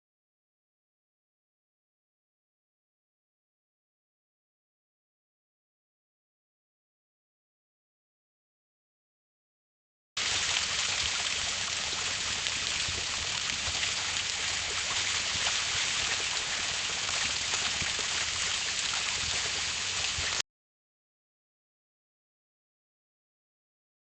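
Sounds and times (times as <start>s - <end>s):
water running from hose: 10.2s - 20.4s.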